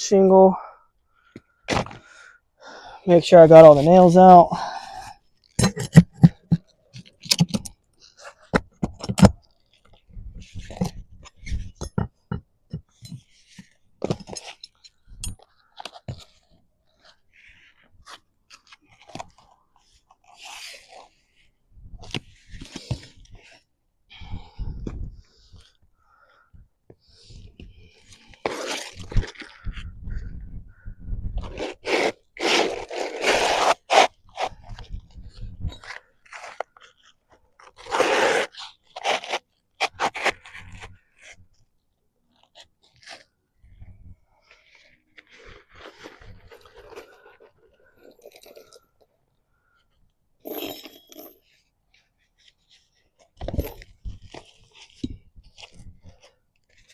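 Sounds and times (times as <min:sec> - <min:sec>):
roof shingles crunching and scraping: 0:27.1 - 0:29.6, 0:31.4 - 0:34.6.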